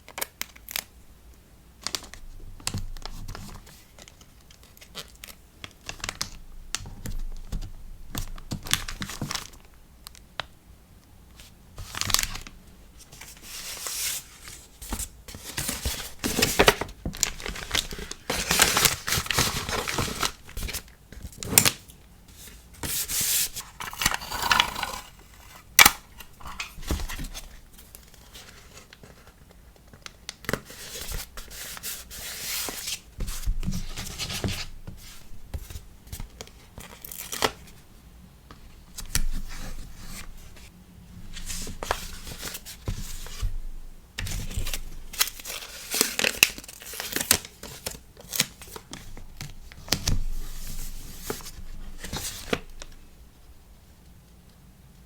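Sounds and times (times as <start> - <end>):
paper and plastic tearing: 23.6 - 27.2.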